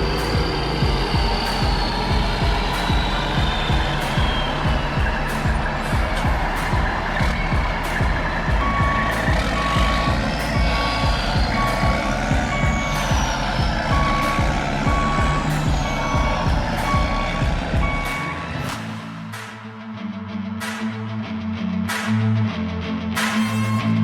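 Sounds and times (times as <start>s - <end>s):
heavy engine rumble: 0.0s - 18.8s
truck reversing alarm beeping: 0.0s - 18.8s.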